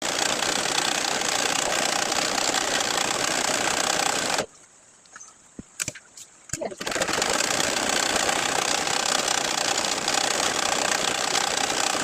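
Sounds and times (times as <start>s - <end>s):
sewing machine stitching: 6.8s - 12.0s.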